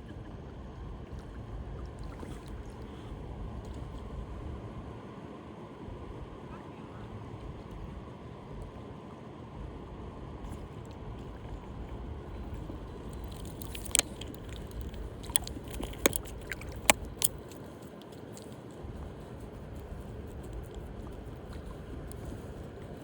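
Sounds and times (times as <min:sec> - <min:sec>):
sharp clicks and knocks: 0:13.2 - 0:17.4.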